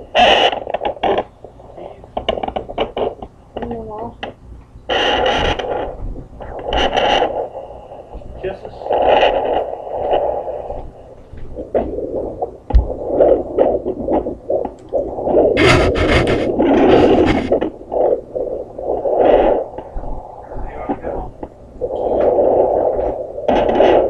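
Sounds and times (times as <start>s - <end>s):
scratchy probe crackling: 0.0s - 24.0s
doppler heartbeat whooshing: 5.2s - 24.0s.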